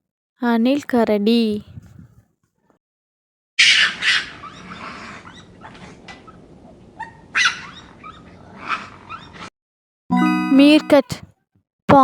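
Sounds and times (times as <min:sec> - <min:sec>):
raccoon chirps and whines: 0:07.0 - 0:09.5.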